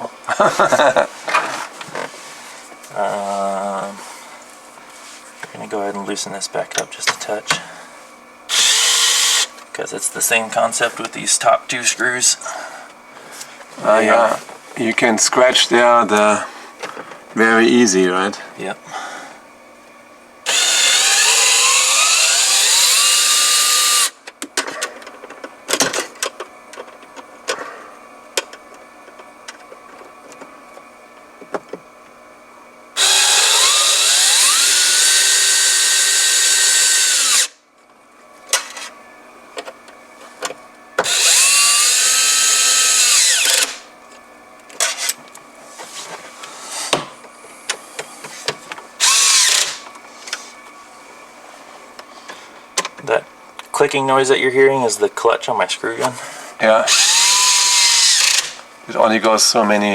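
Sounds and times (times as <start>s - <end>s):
cordless screw gun motor whine: 8.5s - 9.5s, 20.5s - 24.2s, 33.0s - 37.6s, 41.0s - 43.9s, 49.0s - 49.8s, 56.9s - 58.6s.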